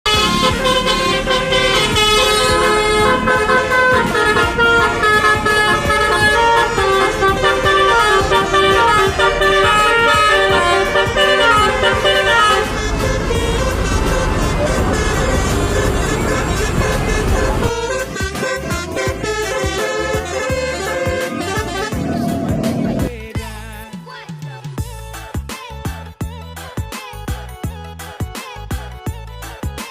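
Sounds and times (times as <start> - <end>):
multi-note bus air horn melody: 0.1 - 23.1.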